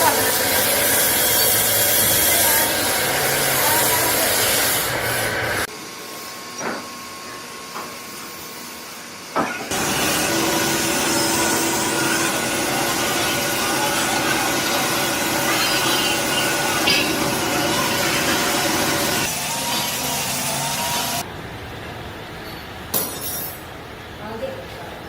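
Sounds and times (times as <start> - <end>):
metalworking machinery hiss: 0.0 - 21.2
machine hum: 8.8 - 23.0.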